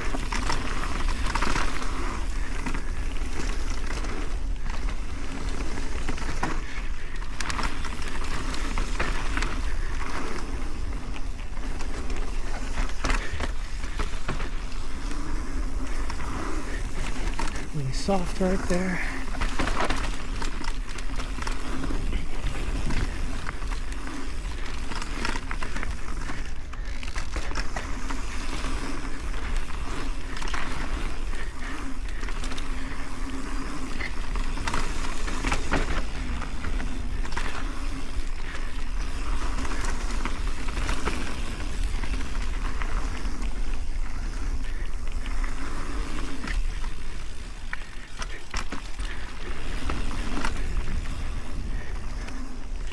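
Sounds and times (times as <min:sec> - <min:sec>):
bike rattling and knocking: 0:00.0 - 0:17.7
bike tyre rushing noise: 0:00.0 - 0:52.9.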